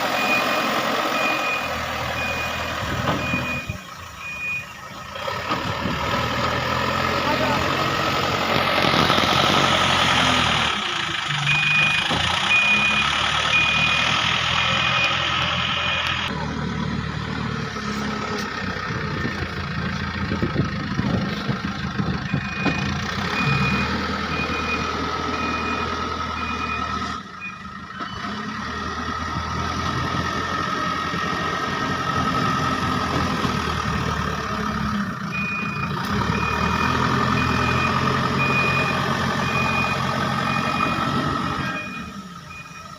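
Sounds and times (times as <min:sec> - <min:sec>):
diesel engines running: 0:00.0 - 0:42.9
reversing alarm beeps: 0:00.2 - 0:05.0, 0:11.4 - 0:16.3, 0:22.3 - 0:28.3, 0:35.3 - 0:42.9.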